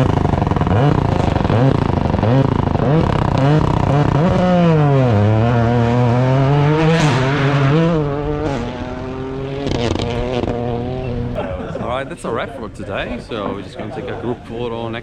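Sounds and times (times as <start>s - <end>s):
rally car engine revving: 0.0s - 11.6s.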